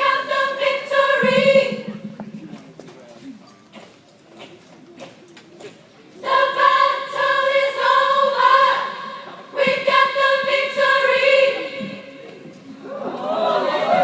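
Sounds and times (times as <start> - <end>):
gospel choir singing: 0.0 - 2.2, 6.2 - 14.0.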